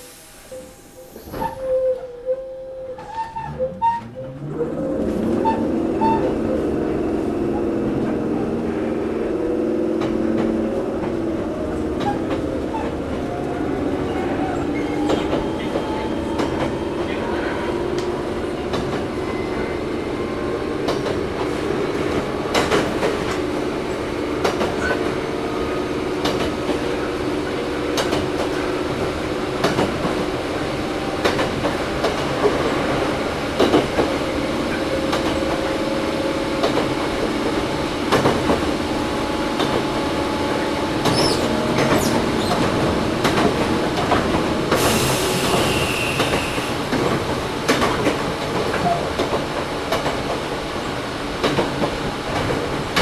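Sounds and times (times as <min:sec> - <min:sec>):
high hiss with thin squeal: 0:00.0 - 0:02.0
train motor and gear hum: 0:00.0 - 0:53.0
rail-joint clicks: 0:09.9 - 0:19.7, 0:20.8 - 0:53.0.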